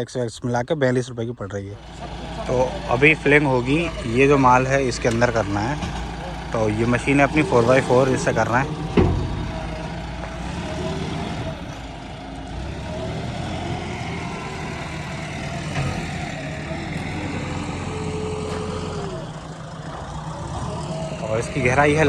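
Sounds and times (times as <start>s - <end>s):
diesel engine running: 1.6s - 22.0s.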